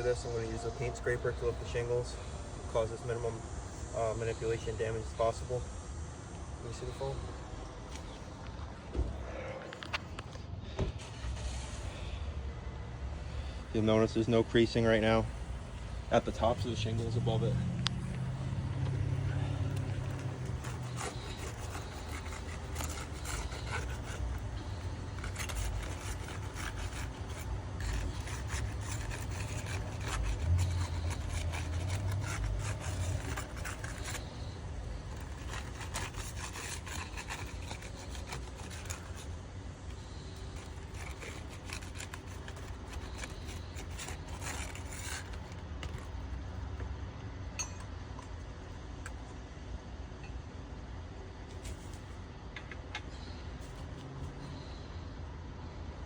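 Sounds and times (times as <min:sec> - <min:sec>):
metal scraper scraping shingles: 0:19.2 - 0:46.3.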